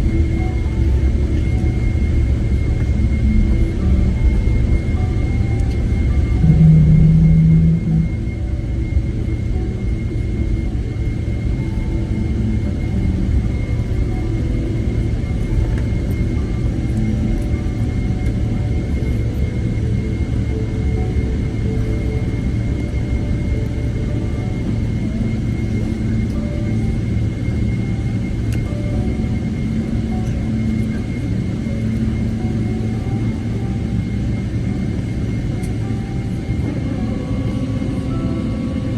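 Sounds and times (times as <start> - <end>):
high-pitched engine whine: 0.0 - 38.9
jet engines low rumble: 0.0 - 38.9.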